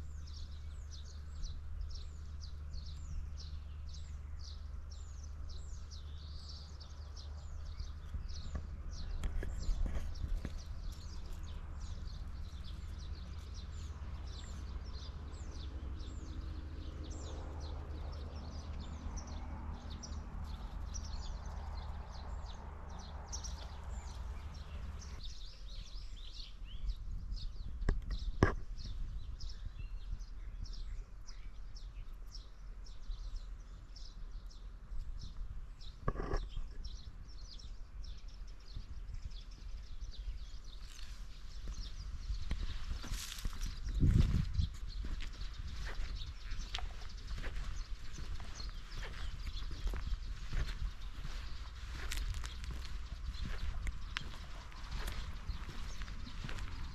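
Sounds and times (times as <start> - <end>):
steady low rumble: 0.0 - 26.2, 41.2 - 56.9
small birds chirping: 0.0 - 56.9.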